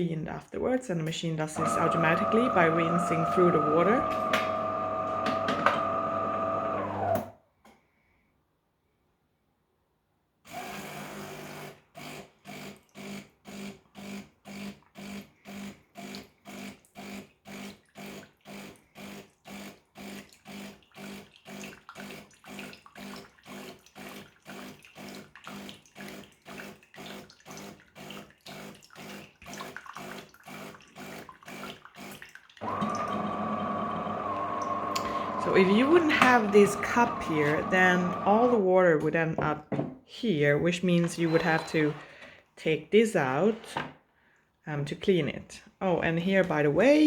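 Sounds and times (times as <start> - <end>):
espresso machine pump humming: 1.6 - 7.3, 32.6 - 38.5.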